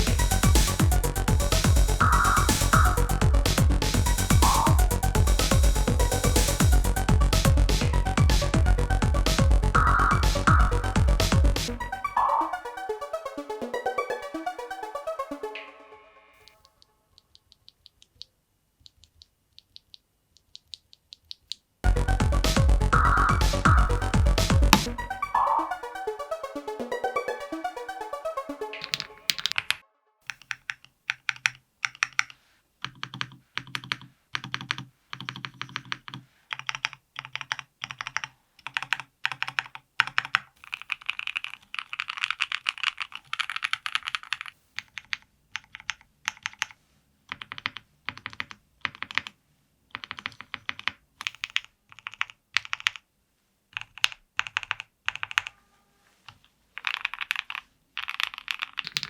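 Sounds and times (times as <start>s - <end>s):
mechanical keyboard keys clacking: 28.8s - 53.0s, 53.8s - 55.5s, 56.8s - 59.0s.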